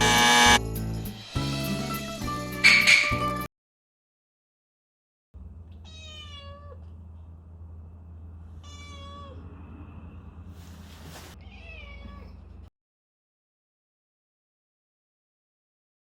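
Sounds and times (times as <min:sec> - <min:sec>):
cat meowing: 0:05.7 - 0:06.9, 0:08.6 - 0:09.5, 0:11.4 - 0:12.6
steady low hum: 0:06.8 - 0:08.7
rustling noise: 0:10.5 - 0:11.4.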